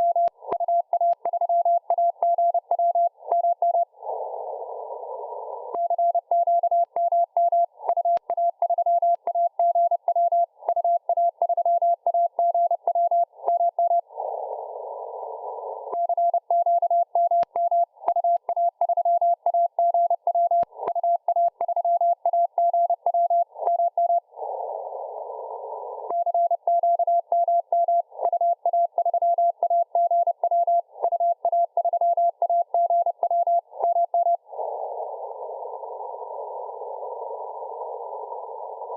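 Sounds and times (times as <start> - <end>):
faint static clicks: 0.0 - 2.6, 5.7 - 9.4, 15.9 - 23.8.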